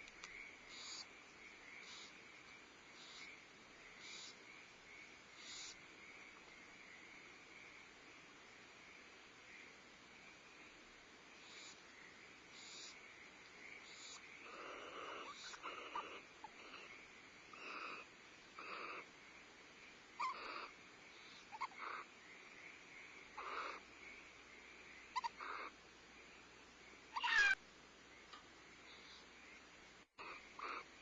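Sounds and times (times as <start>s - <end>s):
owls giving raspy hissing calls: 0.7s - 1.1s, 1.8s - 2.2s, 3.0s - 3.4s, 4.0s - 4.4s, 5.4s - 5.8s, 11.4s - 11.8s, 12.5s - 13.0s, 13.8s - 19.1s, 20.2s - 22.1s, 23.4s - 23.9s, 25.1s - 25.8s, 27.1s - 27.6s, 30.2s - 31.0s
owl screech sweeping down: 27.2s - 27.6s.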